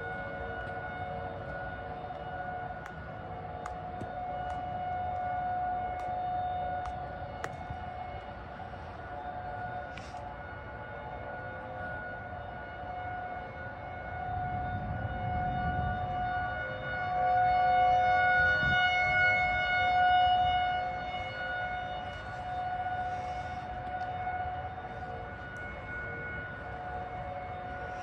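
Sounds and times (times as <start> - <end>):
warning siren: 0.0 - 28.0.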